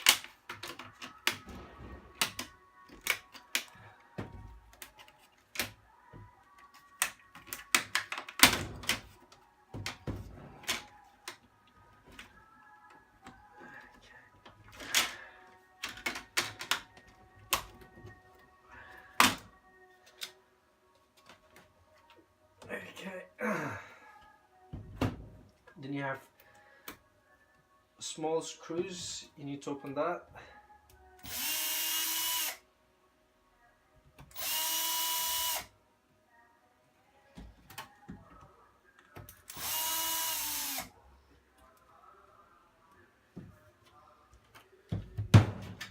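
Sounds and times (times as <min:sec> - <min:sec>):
electric drill motor whining: 0:31.2 - 0:32.6, 0:34.4 - 0:35.7, 0:39.5 - 0:40.9.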